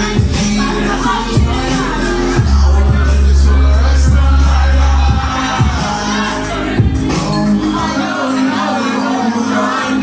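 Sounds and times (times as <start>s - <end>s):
deep bass note: 0.0s - 5.8s
loud pop music: 0.0s - 10.0s
person singing: 0.0s - 10.0s.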